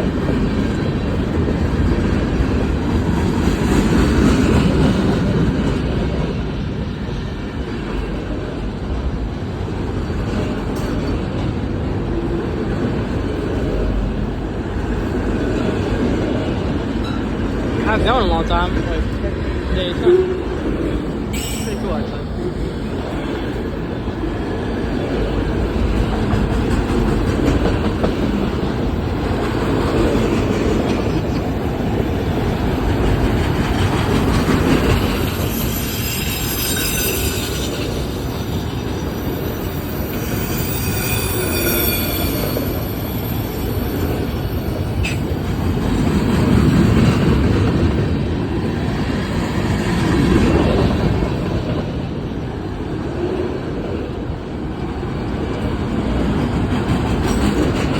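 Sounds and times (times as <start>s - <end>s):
train wheels rumbling on rails: 0.0s - 57.9s
shrill wheel squeal: 21.3s - 21.9s, 35.0s - 45.4s.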